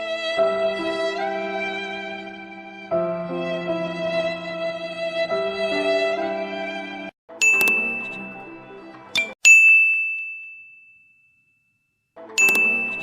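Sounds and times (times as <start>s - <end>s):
violin music: 0.0s - 9.4s, 12.2s - 13.0s
bright bell ding: 7.4s - 8.6s, 9.2s - 11.5s, 12.4s - 13.0s.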